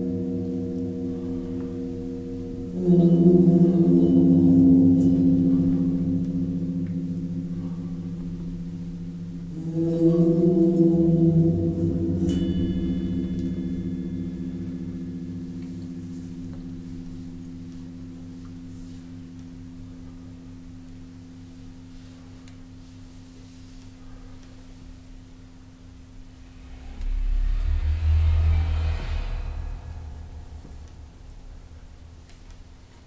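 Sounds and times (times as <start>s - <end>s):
resonator ringing deep tone: 0.0s - 21.7s, 25.0s - 32.9s
high metallic ping: 9.0s - 18.7s.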